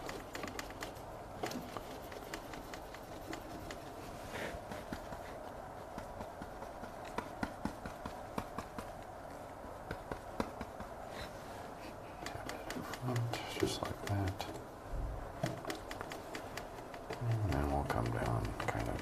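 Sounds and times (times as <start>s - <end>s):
steady low hiss: 0.0s - 19.0s
brush tapping on canvas: 4.6s - 11.3s, 12.2s - 19.0s.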